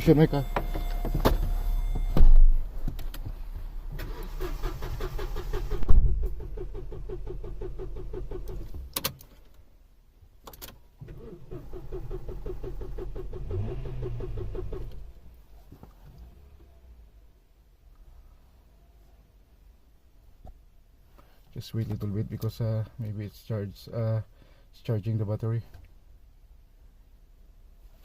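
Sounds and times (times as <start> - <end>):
car engine cranking: 0.0 - 2.2, 3.9 - 9.3, 10.5 - 15.3
loud thump: 0.6 - 2.6, 5.8 - 6.4.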